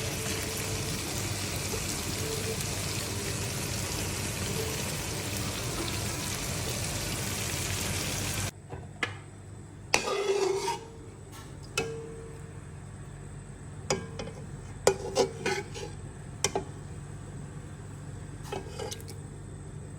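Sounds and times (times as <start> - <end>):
chicken sizzling in oil: 0.0 - 8.5
spoon scraping pan: 10.0 - 11.0, 14.2 - 16.0.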